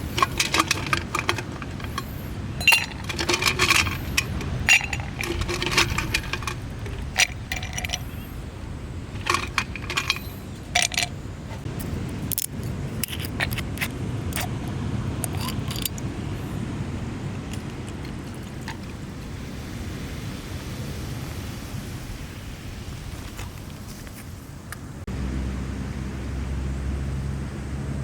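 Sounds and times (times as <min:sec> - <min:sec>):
small metal objects clinking: 0:00.0 - 0:08.4, 0:09.1 - 0:11.2, 0:15.2 - 0:16.0.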